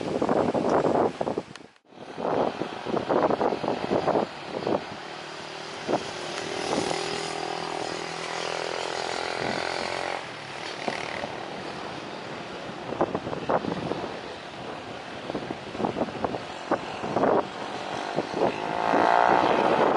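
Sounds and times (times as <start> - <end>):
wind buffeting microphone: 0.0 - 19.9
motor engine passing by: 4.7 - 11.8, 16.8 - 19.9.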